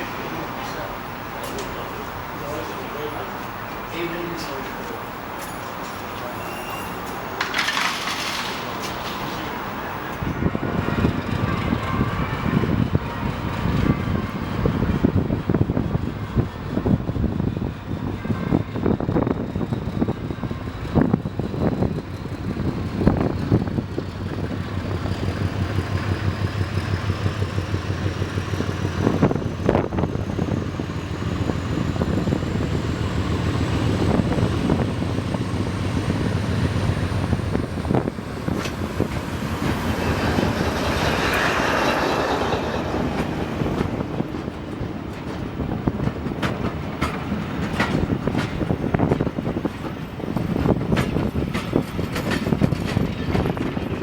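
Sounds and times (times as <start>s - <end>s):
diesel locomotive engine drone: 0.0s - 54.0s
wheels knocking over rail joints: 7.1s - 10.3s, 30.9s - 54.0s.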